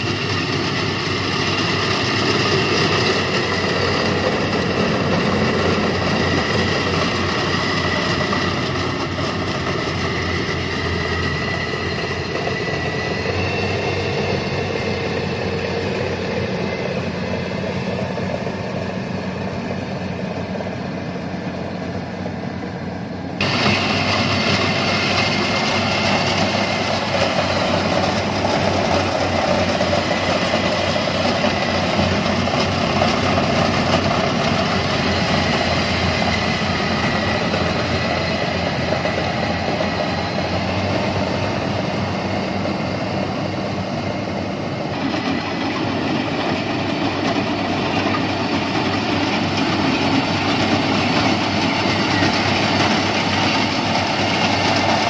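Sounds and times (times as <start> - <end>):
rattling machinery: 0.0 - 22.6, 23.4 - 55.0
combine harvester engine drone: 0.0 - 55.0.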